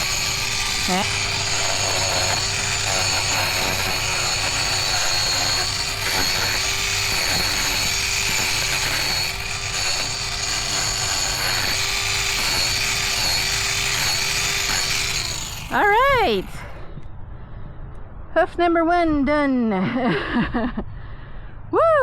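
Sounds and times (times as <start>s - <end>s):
angle grinder grinding hoof: 0.0s - 16.8s.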